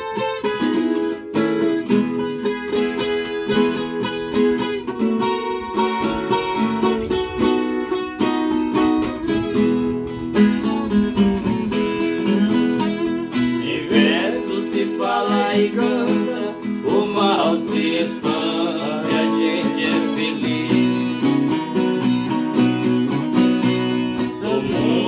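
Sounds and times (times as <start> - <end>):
plucked guitar runs: 0.0 - 25.0
person singing: 13.6 - 21.3, 24.2 - 25.0.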